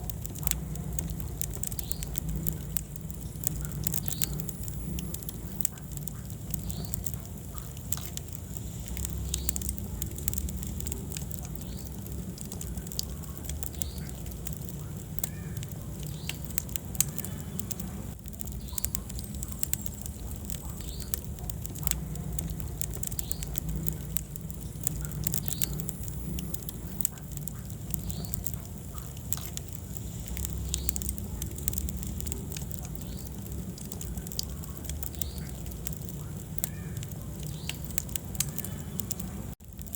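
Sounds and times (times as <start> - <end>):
low rumble of flames: 0.0 - 39.9
wood fire crackling: 0.0 - 39.9.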